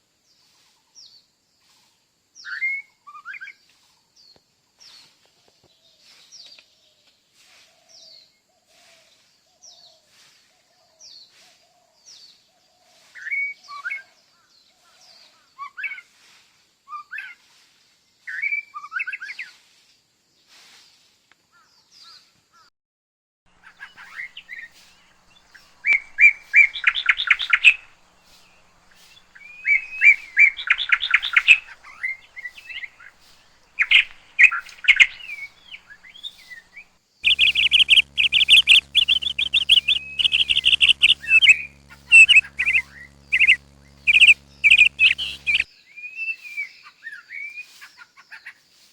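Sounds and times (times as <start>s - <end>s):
bird trilling song: 23.6s - 45.6s
birds chirping: 23.6s - 45.7s.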